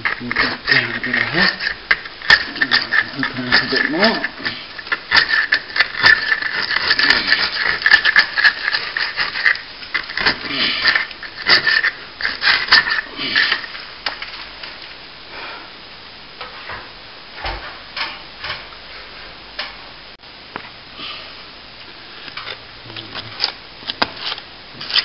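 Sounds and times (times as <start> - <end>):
hand tool scraping plaster: 0.0 - 13.9.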